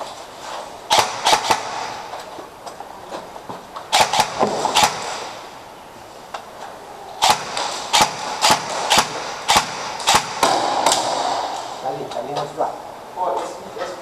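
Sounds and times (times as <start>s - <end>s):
airsoft gun firing single shots: 0.9s - 2.1s, 3.9s - 5.5s, 7.2s - 11.8s.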